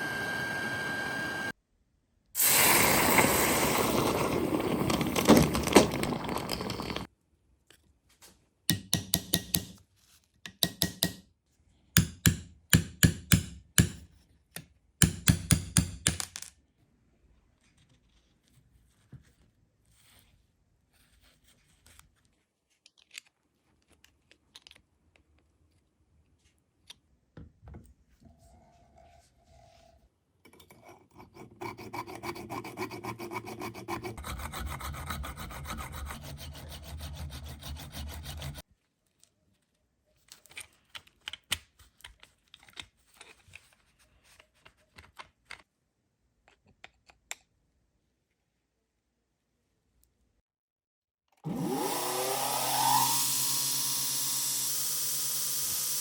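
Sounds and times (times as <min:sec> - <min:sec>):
hand tool scraping metal: 0:30.5 - 0:38.6.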